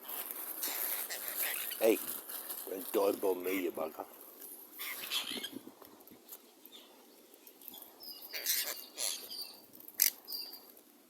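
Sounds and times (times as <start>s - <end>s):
birds harsh scratchy calls: 0.4s - 3.9s, 4.7s - 5.6s, 7.7s - 10.7s.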